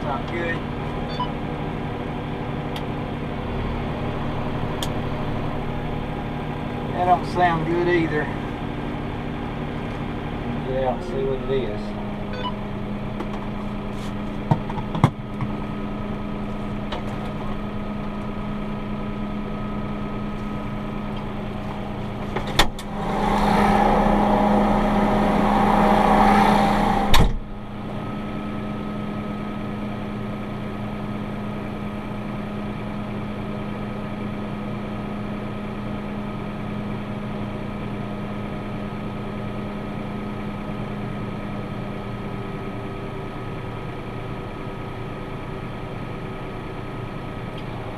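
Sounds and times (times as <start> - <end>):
tractor engine running: 0.0 - 47.9
sharp bang: 22.6 - 27.8.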